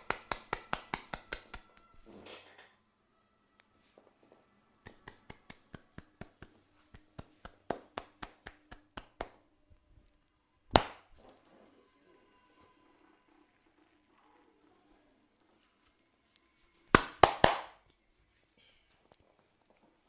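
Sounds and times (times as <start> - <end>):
percussive massage taps: 0.0 - 1.9, 4.8 - 9.4, 10.7 - 11.1, 16.9 - 17.8.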